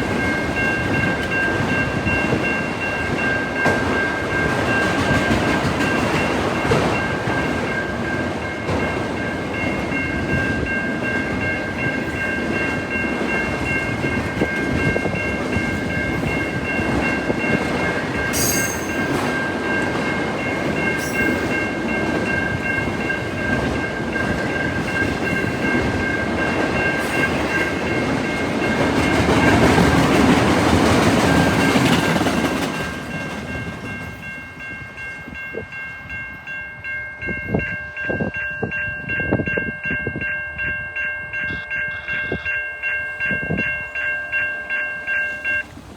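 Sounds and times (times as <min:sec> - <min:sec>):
train wheels rumbling on rails: 0:00.0 - 0:45.9
clickety-clack of wheels: 0:03.1 - 0:34.2
high ringing tone: 0:06.6 - 0:29.6, 0:33.5 - 0:45.7.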